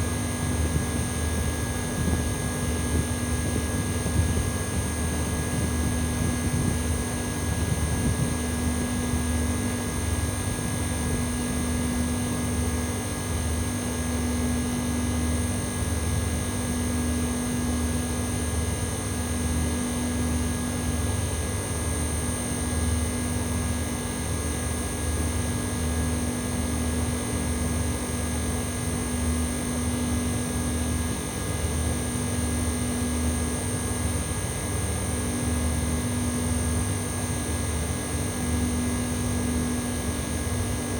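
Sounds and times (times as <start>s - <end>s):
air conditioner unit running: 0.0s - 40.9s.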